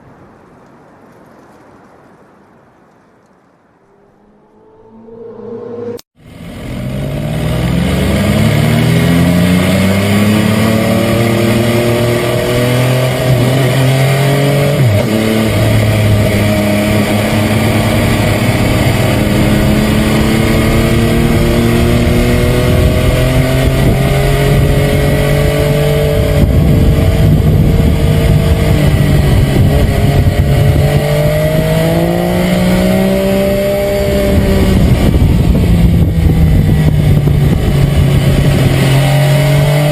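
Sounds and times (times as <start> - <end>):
motorcycle engine running hard: 5.9 - 39.9.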